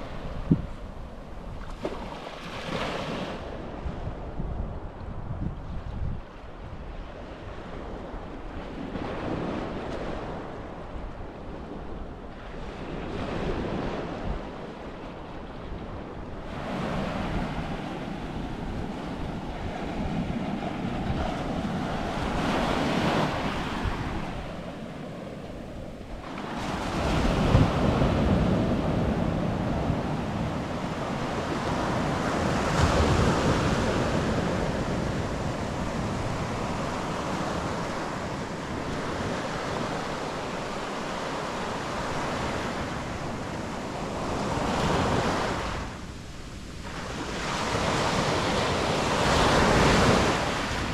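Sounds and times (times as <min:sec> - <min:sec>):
wind rumble on microphone: 0:00.0 - 0:50.9
sea waves breaking on beach: 0:16.4 - 0:50.9.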